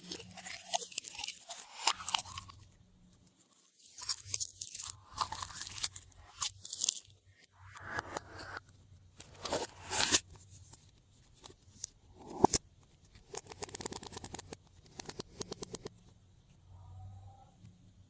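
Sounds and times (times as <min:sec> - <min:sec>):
slime scraping and rustling: 0:09.2 - 0:10.5
small clicks and pops: 0:11.4 - 0:16.1.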